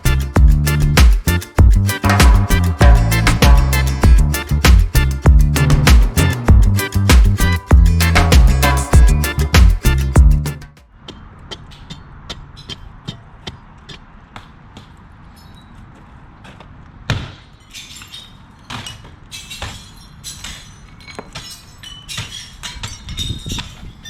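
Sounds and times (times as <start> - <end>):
hand demolition knocks and clinks: 17.2 - 24.0.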